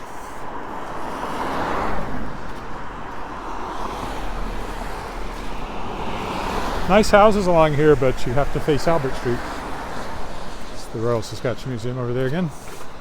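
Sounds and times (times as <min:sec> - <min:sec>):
low traffic rumble: 0:00.0 - 0:13.0
tyres hissing on wet pavement: 0:03.4 - 0:13.0.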